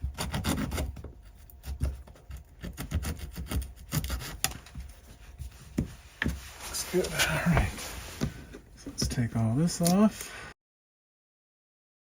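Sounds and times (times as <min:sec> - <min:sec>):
hand saw on wood: 0:00.0 - 0:04.6.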